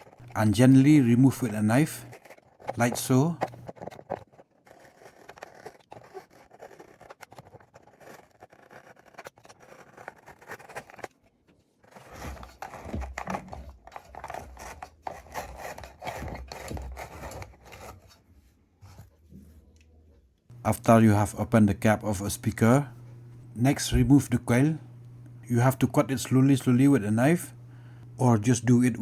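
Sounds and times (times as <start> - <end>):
knife scraping loudspeaker: 0.2 - 2.2, 20.5 - 29.0.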